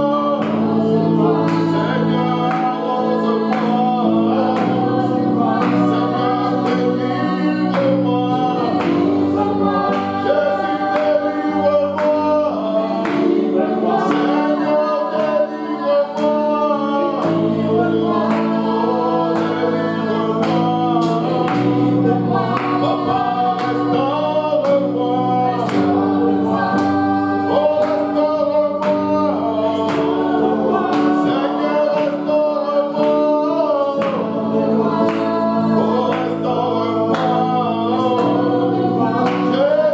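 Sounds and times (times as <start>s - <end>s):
choir singing: 0.0s - 39.9s
held keyboard chords: 0.0s - 39.9s.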